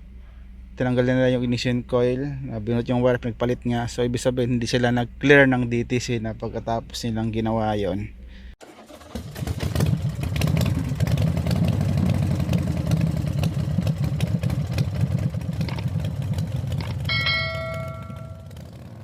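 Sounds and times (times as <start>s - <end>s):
truck engine idling roughly: 8.6s - 18.7s
bell-like chime: 17.1s - 18.6s.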